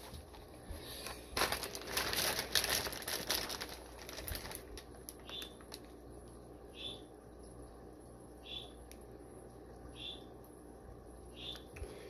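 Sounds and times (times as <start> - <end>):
plastic bag crinkling: 0.0 - 6.1.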